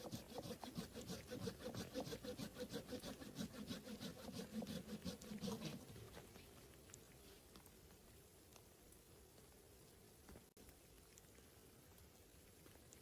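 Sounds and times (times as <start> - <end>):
hand saw cutting wood: 0.0 - 6.2.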